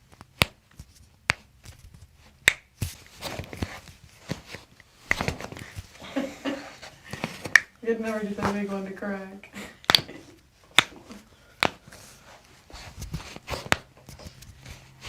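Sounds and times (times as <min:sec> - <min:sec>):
joint cracks: 0:07.4 - 0:07.8, 0:10.7 - 0:11.8.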